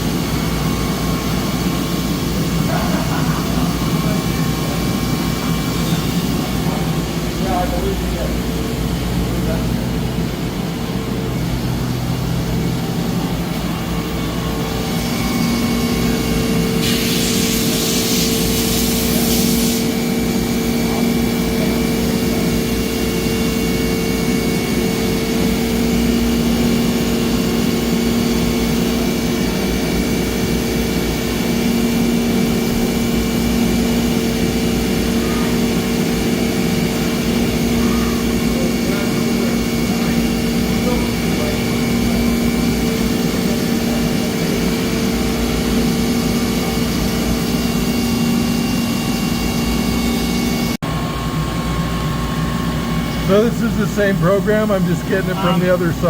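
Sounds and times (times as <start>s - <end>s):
machine drone: 0.0s - 56.0s
steady machine whine: 0.0s - 56.0s
hiss: 16.8s - 20.1s.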